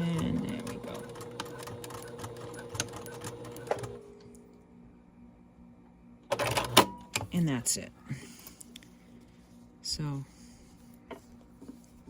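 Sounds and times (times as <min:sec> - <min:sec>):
sewing machine stitching: 0:00.0 - 0:04.0.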